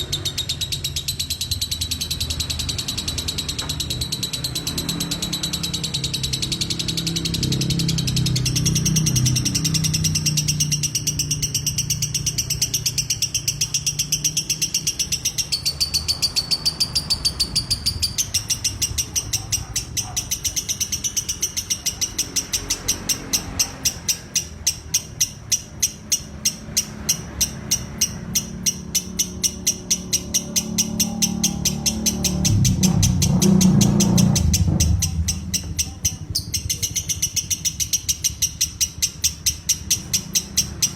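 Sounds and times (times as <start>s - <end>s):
lovebird chattering trill: 0.0s - 40.9s.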